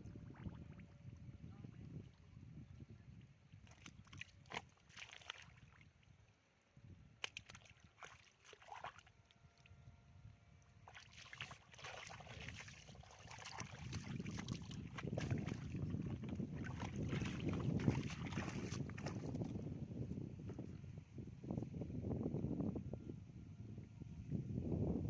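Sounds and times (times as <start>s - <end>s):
shallow muddy water sloshing: 0.0s - 19.8s
small crackles and splats: 3.6s - 6.0s, 7.2s - 9.4s, 10.8s - 19.4s.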